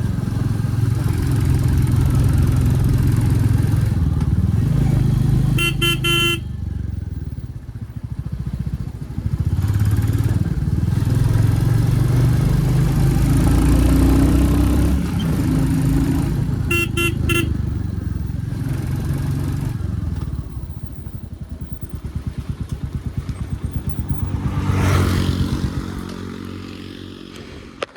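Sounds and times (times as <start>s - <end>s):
horn beeps: 5.6s - 6.6s, 16.7s - 17.6s
motorcycle engine thumping: 20.0s - 26.6s.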